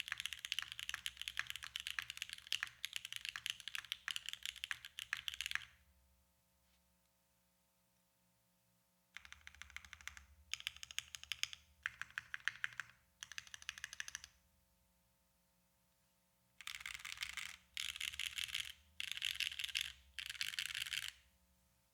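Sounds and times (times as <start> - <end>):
mechanical keyboard typing: 0.0 - 5.7, 9.2 - 14.3, 16.6 - 21.2.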